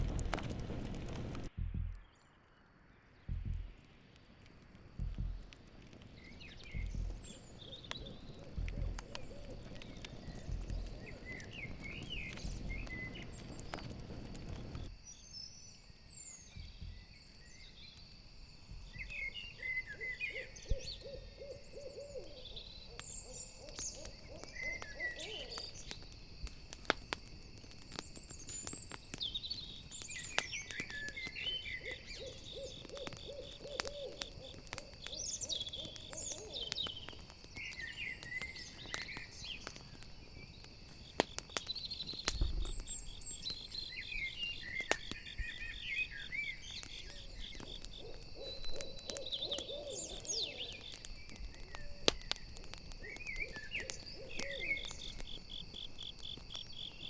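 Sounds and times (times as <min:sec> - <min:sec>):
low rumble: 0:00.0 - 0:02.2, 0:03.2 - 0:03.8, 0:05.0 - 0:05.6
campfire crackling: 0:00.0 - 0:57.0
crickets trilling: 0:00.0 - 0:57.0
bird chirps: 0:06.0 - 0:26.2, 0:28.0 - 0:55.6
owl hooting: 0:06.7 - 0:13.0, 0:19.2 - 0:25.9, 0:30.6 - 0:39.4, 0:46.2 - 0:51.1, 0:51.8 - 0:55.2.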